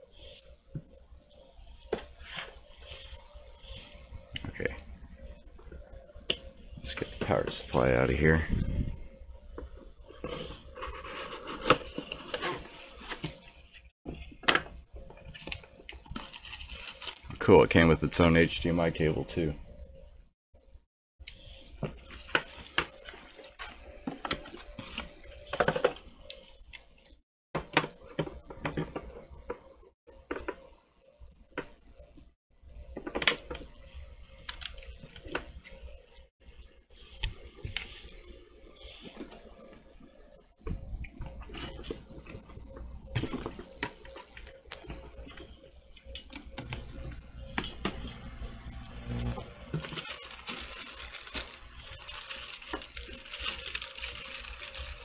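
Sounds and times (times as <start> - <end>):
packaging rustling and clicking: 49.6 - 55.0.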